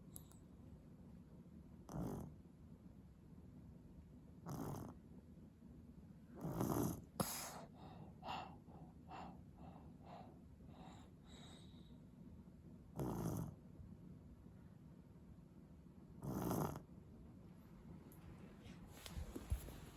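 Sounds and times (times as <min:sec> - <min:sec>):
baby snoring: 0:06.4 - 0:09.4
faint snuffles: 0:06.4 - 0:11.9.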